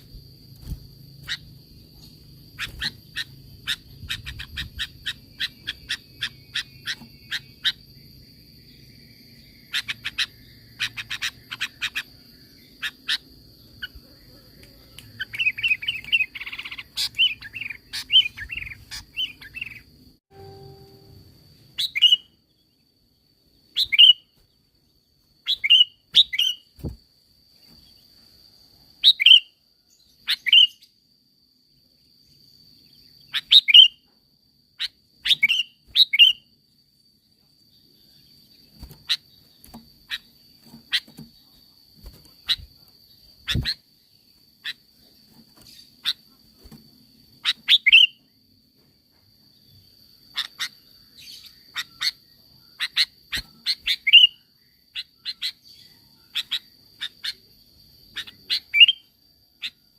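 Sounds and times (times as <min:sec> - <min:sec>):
bulbul chirping calls: 0:47.4 - 0:48.2.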